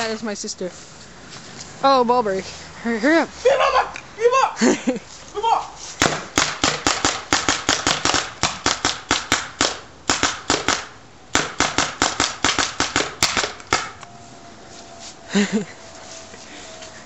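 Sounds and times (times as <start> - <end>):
paintball marker firing: 6.0 - 14.0.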